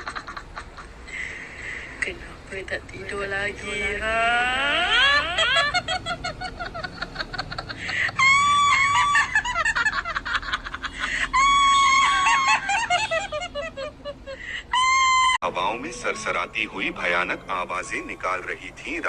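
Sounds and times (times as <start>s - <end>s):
shrill steady cry: 7.9s - 10.4s, 11.0s - 17.4s.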